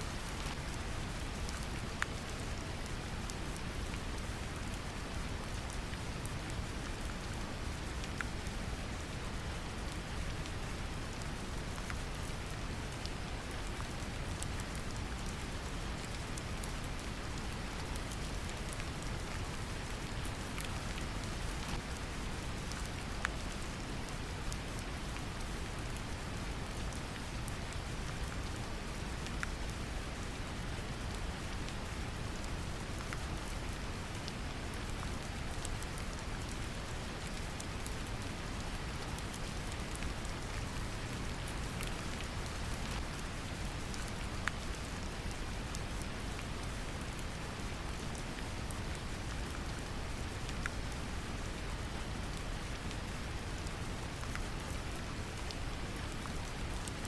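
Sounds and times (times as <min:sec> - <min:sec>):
steady rain: 0:00.0 - 0:57.0
rain drop ticks: 0:00.2 - 0:57.0.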